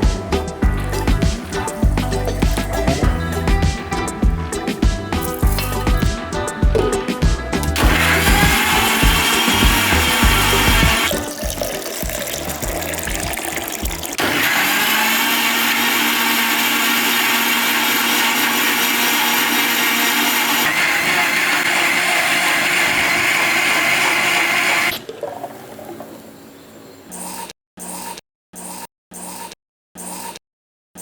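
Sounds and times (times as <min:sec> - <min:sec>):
mixer grinder whirring: 0:00.0 - 0:25.2
mixer grinder pulses: 0:00.0 - 0:26.2.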